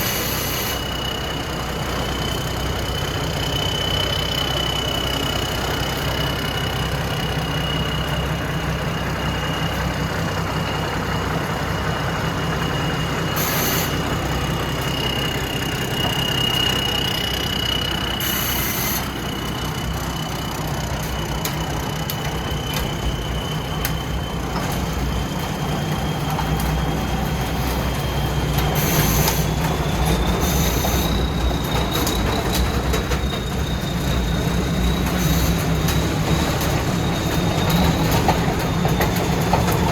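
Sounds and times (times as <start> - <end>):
combine harvester engine rumble: 0.0 - 39.9
high machine whine: 0.0 - 39.9
short hissing bursts: 13.4 - 14.0, 18.2 - 19.2.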